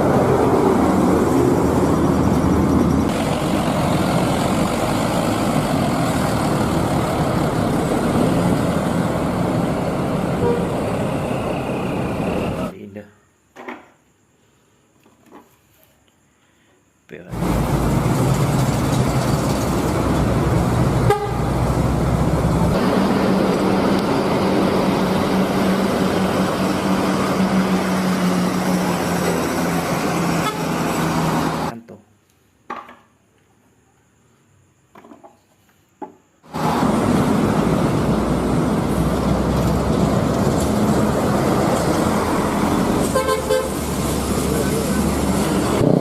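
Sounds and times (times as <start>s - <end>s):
vehicle engines running: 0.0s - 12.7s, 17.3s - 31.8s, 36.4s - 46.0s
car horn toots: 21.0s - 21.4s, 30.4s - 30.8s, 43.1s - 43.8s.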